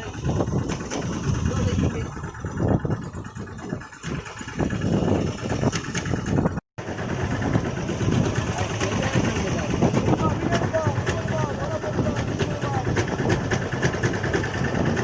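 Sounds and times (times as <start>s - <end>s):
boat engine low rumble: 0.0s - 15.0s.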